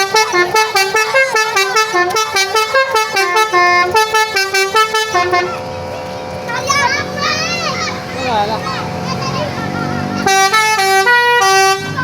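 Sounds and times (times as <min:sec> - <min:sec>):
musical air horn playing a tune: 0:00.0 - 0:05.7, 0:10.2 - 0:12.0.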